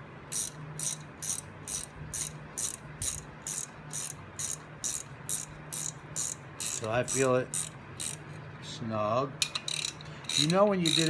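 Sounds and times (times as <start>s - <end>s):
steady low hum: 0.0s - 11.0s
ratchet wrench clicking: 0.3s - 8.4s, 9.4s - 11.0s.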